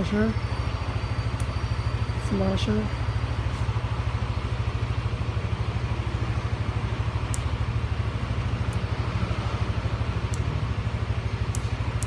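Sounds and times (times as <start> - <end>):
scooter engine idling: 0.0 - 12.0
light click: 7.2 - 7.5, 10.2 - 10.5, 11.5 - 12.0.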